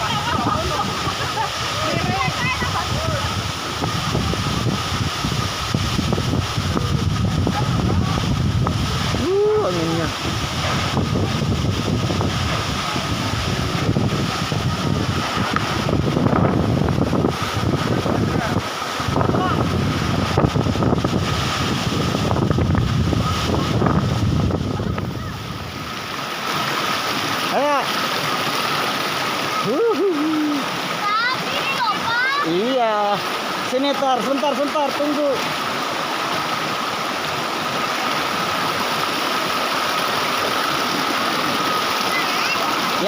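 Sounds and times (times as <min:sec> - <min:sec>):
wind buffeting microphone: 0:00.0 - 0:26.2
waterfall roaring: 0:00.0 - 0:43.0.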